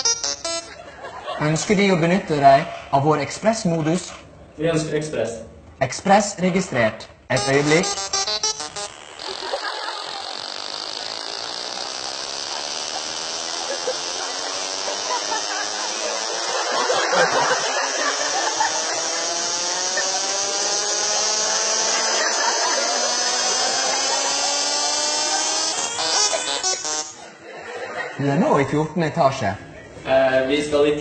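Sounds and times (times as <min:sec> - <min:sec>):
elevator whine rising in pitch: 0:00.0 - 0:01.4, 0:07.4 - 0:27.5.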